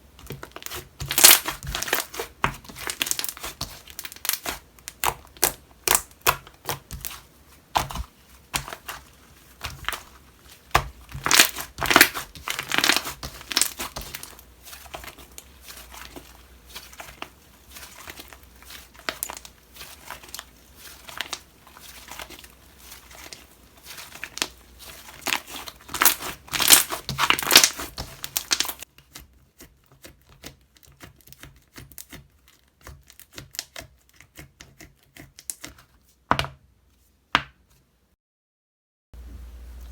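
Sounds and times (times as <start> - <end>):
slime crackling and popping: 0.2 - 7.2, 9.6 - 16.2, 16.8 - 28.9.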